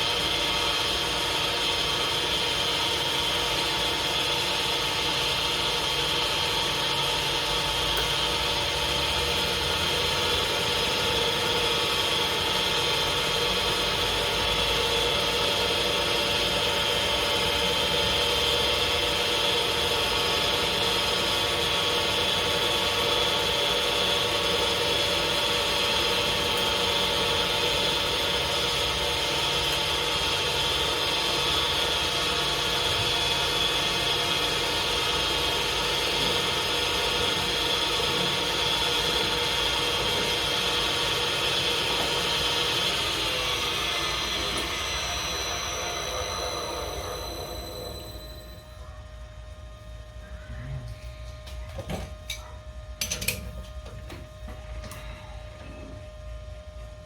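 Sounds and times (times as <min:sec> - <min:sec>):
lathe humming with high whine: 0:00.0 - 0:57.0.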